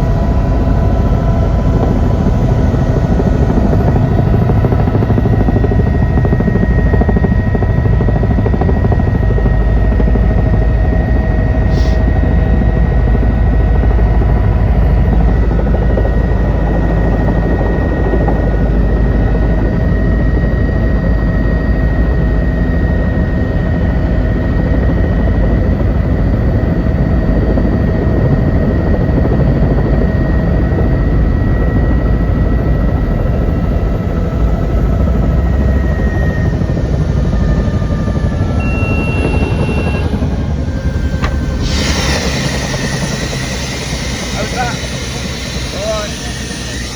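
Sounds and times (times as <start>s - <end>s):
helicopter rotor and engine drone: 0.0s - 46.9s
high-pitched whine: 34.0s - 46.9s.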